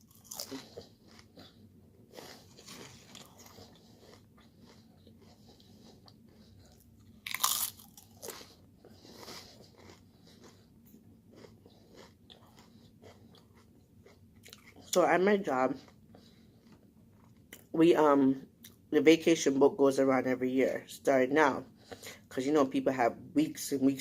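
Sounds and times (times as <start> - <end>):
chips crunching: 0.0 - 1.3, 2.2 - 4.2, 7.2 - 10.6, 11.4 - 13.6
crunchy chewing: 0.0 - 15.0, 15.7 - 17.7.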